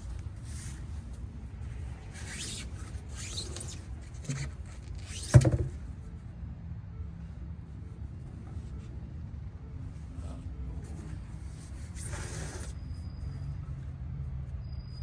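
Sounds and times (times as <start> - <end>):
rubbing and scraping: 1.8 - 5.8.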